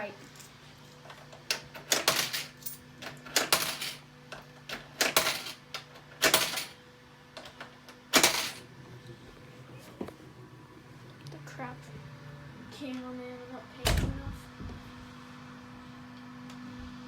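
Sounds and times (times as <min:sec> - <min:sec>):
faint machine hum: 0:00.0 - 0:17.0
vending machine clattering: 0:01.2 - 0:06.8, 0:07.4 - 0:08.7.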